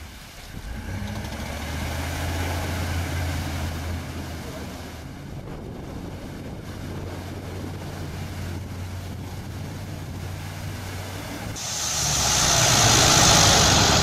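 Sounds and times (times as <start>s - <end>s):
truck engine humming: 0.6s - 14.0s
loud rushing hiss: 11.6s - 14.0s.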